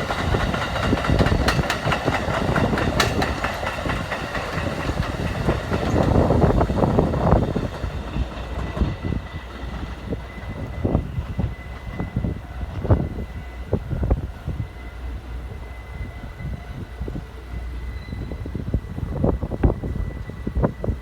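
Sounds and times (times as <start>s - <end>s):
electric train rumbling past: 0.0s - 21.0s.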